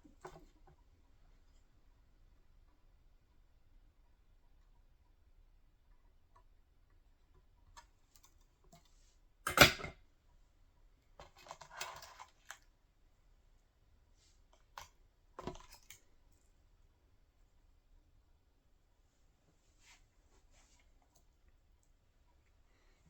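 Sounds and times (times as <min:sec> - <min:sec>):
tool handling clicks: 0:09.5 - 0:09.9.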